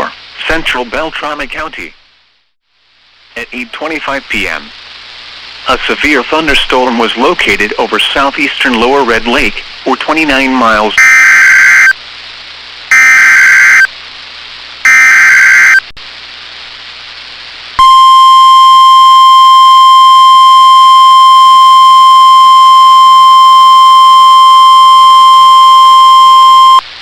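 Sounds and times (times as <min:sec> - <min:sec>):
harsh digital data bursts: 0:11.0 - 0:12.0, 0:12.9 - 0:13.9, 0:14.9 - 0:15.9
loud steady alarm tone: 0:11.0 - 0:12.0, 0:12.9 - 0:13.9, 0:14.8 - 0:15.9.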